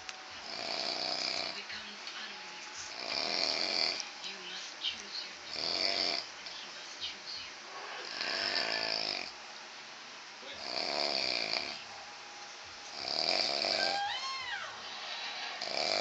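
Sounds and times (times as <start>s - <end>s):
man snoring heavily: 0.4s - 1.6s, 2.9s - 4.0s, 5.5s - 6.2s, 7.7s - 9.4s, 10.6s - 11.8s, 12.9s - 14.0s, 15.6s - 16.0s.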